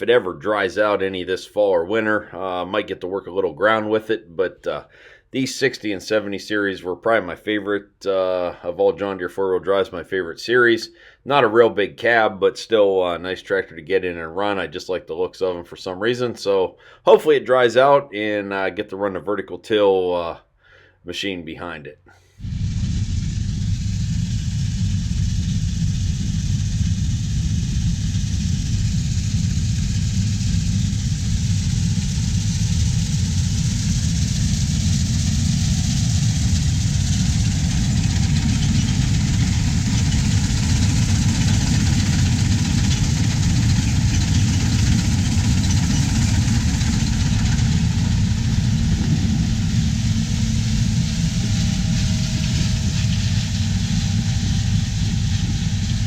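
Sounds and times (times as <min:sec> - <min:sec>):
diesel engine rumbling: 0:22.4 - 0:56.0.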